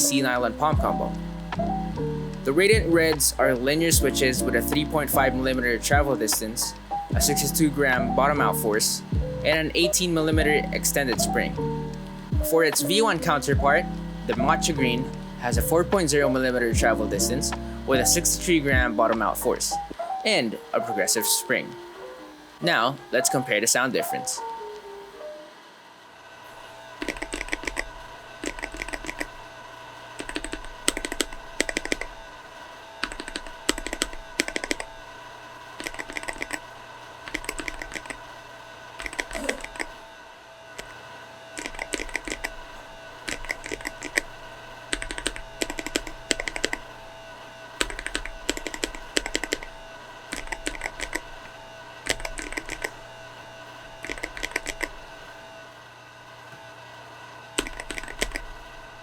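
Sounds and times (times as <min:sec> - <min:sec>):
mechanical keyboard typing: 0:27.0 - 0:29.4, 0:30.2 - 0:32.2, 0:33.0 - 0:34.9, 0:35.8 - 0:38.2, 0:39.0 - 0:40.0, 0:41.6 - 0:42.6, 0:43.2 - 0:44.3, 0:44.9 - 0:46.9, 0:47.8 - 0:49.7, 0:50.3 - 0:51.3, 0:52.0 - 0:53.0, 0:54.0 - 0:55.0, 0:57.6 - 0:58.6.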